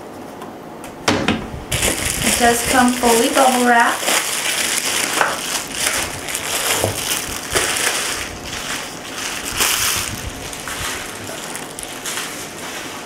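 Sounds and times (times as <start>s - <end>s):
bubble wrap crinkling: 1.7s - 13.0s.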